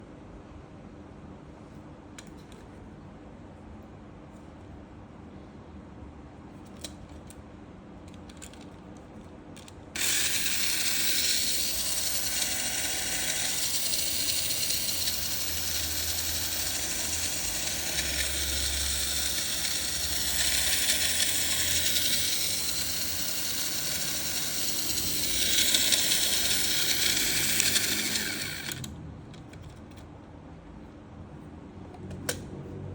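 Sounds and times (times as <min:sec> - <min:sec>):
toy car motor whirring: 0:10.0 - 0:28.9.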